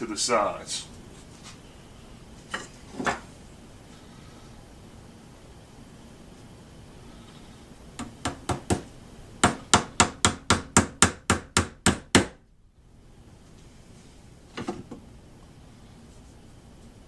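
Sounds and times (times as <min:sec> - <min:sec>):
hammer nailing into wood: 0:08.0 - 0:12.4.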